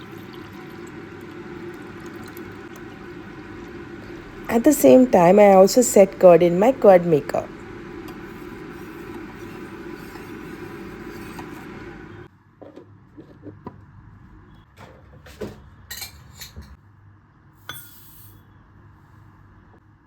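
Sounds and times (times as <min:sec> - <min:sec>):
dishes clinking and knocking: 0:15.4 - 0:16.8.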